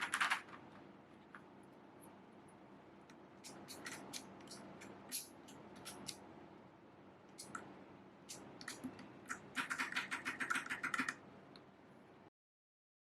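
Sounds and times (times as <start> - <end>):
mechanical keyboard typing: 0.0 - 0.7, 3.4 - 5.2, 8.3 - 11.2.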